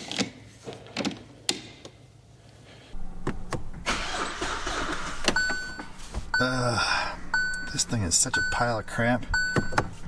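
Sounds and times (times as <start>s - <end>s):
car engine cranking and starting: 3.4s - 6.5s.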